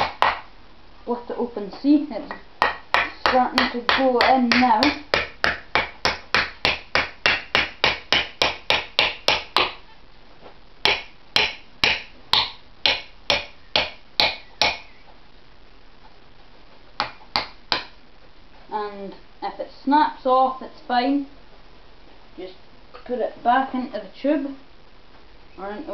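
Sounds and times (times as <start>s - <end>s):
hammer striking wooden wedge: 0.0s - 0.5s, 2.3s - 9.8s, 10.8s - 14.9s, 17.0s - 18.0s.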